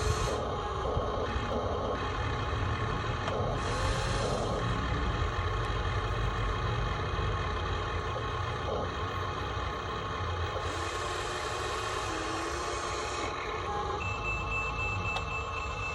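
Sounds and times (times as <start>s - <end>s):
engine idling: 0.0s - 15.9s
whining tones: 9.8s - 15.9s.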